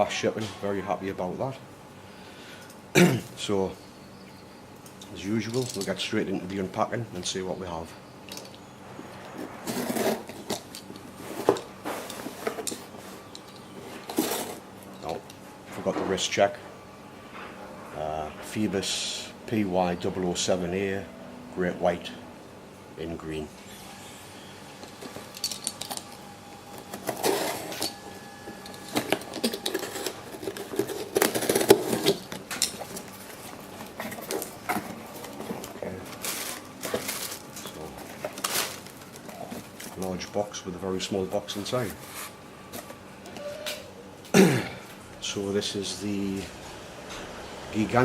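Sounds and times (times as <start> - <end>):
package rustling scrapes: 9.4 - 14.6, 26.9 - 28.0, 28.7 - 40.0.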